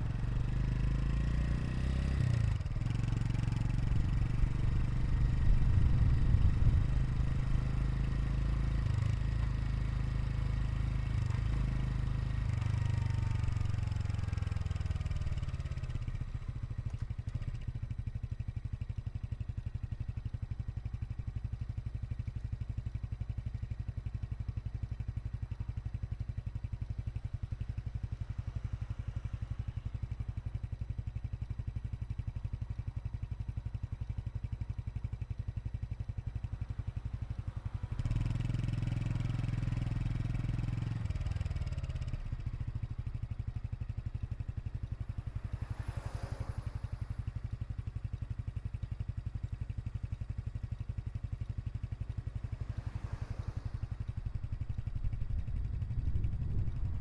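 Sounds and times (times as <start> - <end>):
motorcycle engine idling: 0.0 - 57.0.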